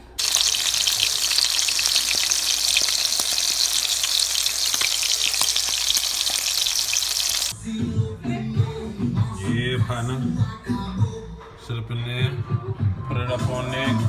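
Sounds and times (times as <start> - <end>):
steaks sizzling in hot pan: 0.0 - 7.5.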